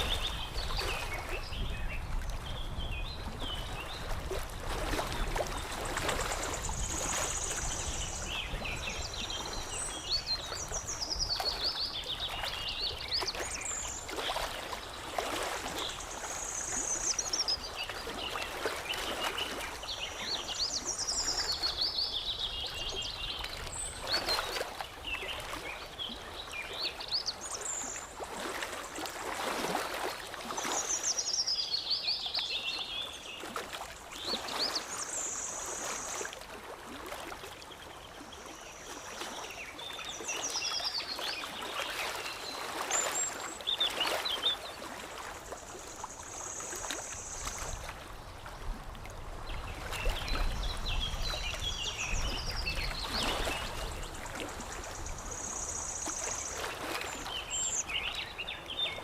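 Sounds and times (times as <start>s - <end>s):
water lapping and trickling: 0.0s - 59.0s
songbirds chirping and trilling: 49.5s - 59.0s.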